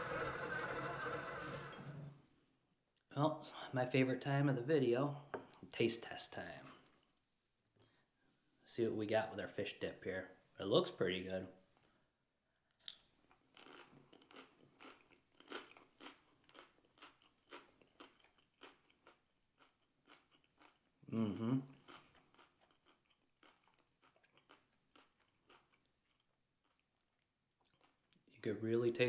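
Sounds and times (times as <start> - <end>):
man chewing: 12.8 - 28.2
man murmuring: 21.1 - 21.7.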